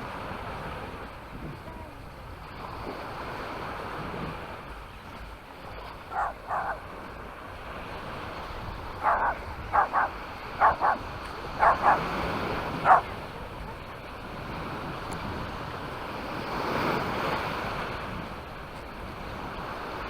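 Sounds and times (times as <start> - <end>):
surf: 0.0 - 20.0
wind: 0.0 - 20.0
dog barking: 6.1 - 6.9, 9.0 - 12.2, 12.8 - 13.2.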